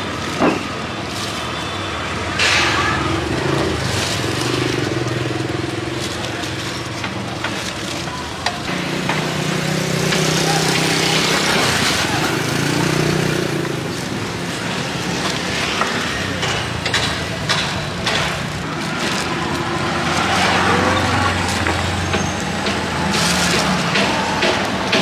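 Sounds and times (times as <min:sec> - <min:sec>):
indistinct background talk: 0:00.0 - 0:25.0
steady traffic noise: 0:00.0 - 0:25.0
sharp clicks and clacks: 0:15.0 - 0:25.0.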